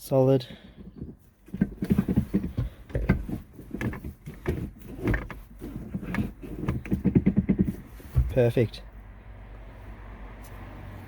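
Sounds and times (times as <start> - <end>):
gear lever clunks and clicks: 0.8 - 8.4.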